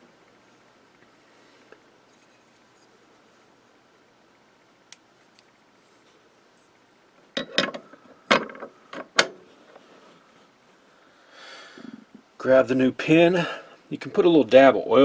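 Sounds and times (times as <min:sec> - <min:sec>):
light snap: 0:04.9 - 0:05.5.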